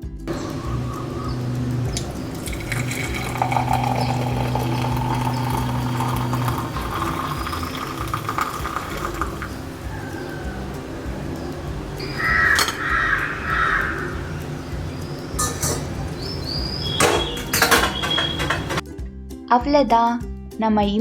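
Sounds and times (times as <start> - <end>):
steady low hum: 0.3 - 6.9, 9.1 - 12.2
hot drink pouring into a cup: 0.3 - 18.8.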